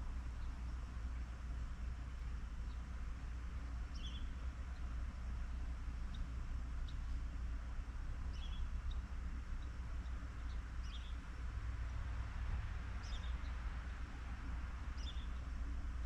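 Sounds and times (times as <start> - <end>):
steady low rumble: 0.0 - 16.0
small birds chirping: 0.2 - 7.6, 8.2 - 11.6, 13.0 - 14.0, 14.9 - 15.6.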